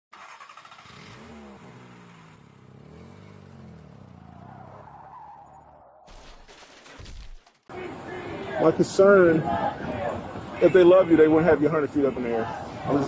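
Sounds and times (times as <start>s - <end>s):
car engine revving: 0.1s - 5.7s.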